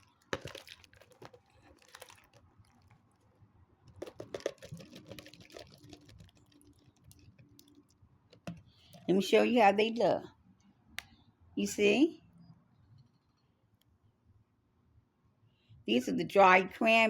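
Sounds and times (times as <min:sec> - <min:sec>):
containers clicking and tapping: 0:00.0 - 0:03.2, 0:03.8 - 0:09.3.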